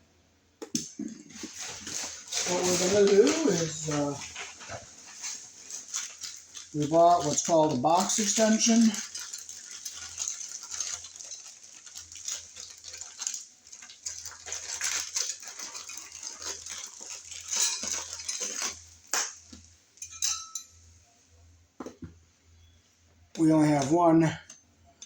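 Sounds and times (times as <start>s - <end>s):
small hard parts clicking: 5.2s - 18.8s.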